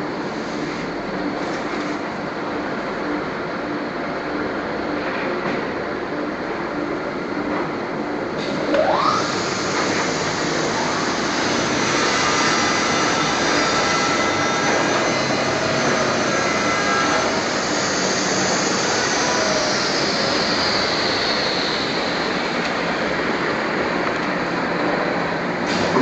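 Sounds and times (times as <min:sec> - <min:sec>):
trimming machine whirring: 0:08.6 - 0:23.2.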